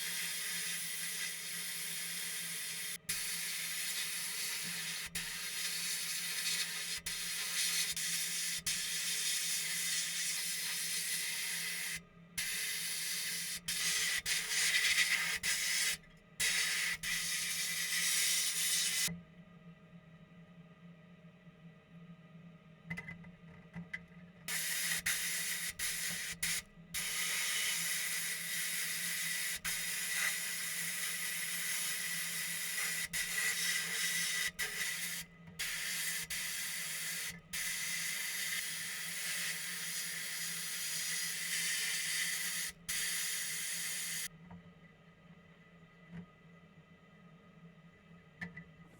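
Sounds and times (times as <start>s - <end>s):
air tool hissing: 0.0s - 19.1s, 24.5s - 44.3s
low steady hum: 19.0s - 24.5s, 44.3s - 48.9s.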